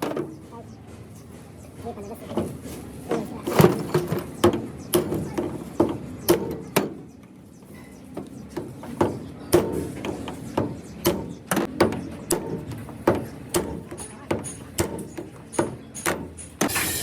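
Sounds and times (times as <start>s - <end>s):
hammer blows on metal: 8.5s - 17.0s.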